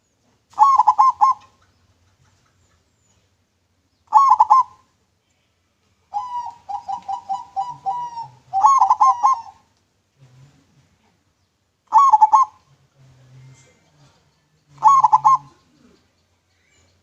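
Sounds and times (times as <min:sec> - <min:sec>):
dove cooing: 0:00.5 - 0:03.3, 0:04.1 - 0:04.9, 0:06.1 - 0:09.7, 0:11.9 - 0:12.8, 0:13.6 - 0:17.0.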